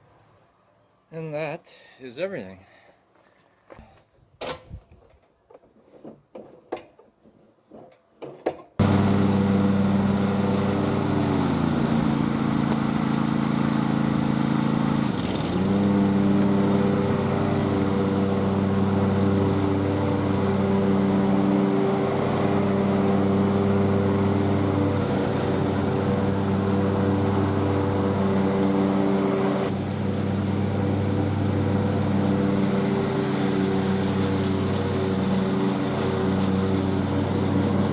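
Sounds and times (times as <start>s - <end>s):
mower engine running: 8.8s - 37.9s.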